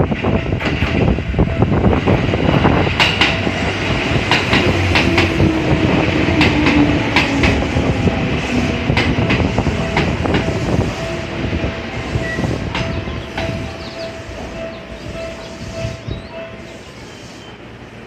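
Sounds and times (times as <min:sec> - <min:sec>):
train low hum: 0:00.0 - 0:18.0
train wheels clacking over rail joints: 0:00.1 - 0:01.2, 0:02.0 - 0:17.6
level crossing warning bell: 0:09.8 - 0:17.0.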